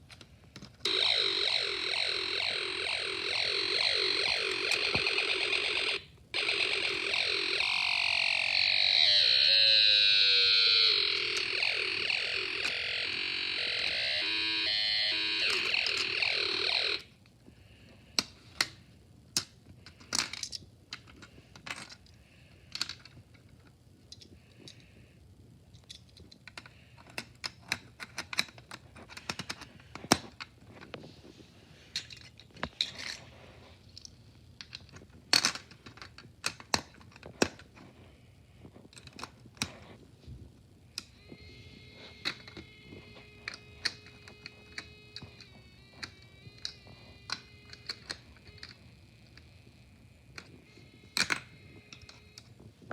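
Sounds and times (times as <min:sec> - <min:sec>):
electronic siren sound effect: 0:00.9 - 0:17.1, 0:41.0 - 0:52.4
plastic parts clicking together: 0:18.2 - 0:24.8, 0:25.7 - 0:31.0, 0:31.9 - 0:33.2, 0:33.9 - 0:37.8, 0:38.8 - 0:39.8, 0:42.2 - 0:42.6, 0:43.4 - 0:49.4, 0:50.3 - 0:52.6
faint electronic tone: 0:41.0 - 0:52.9.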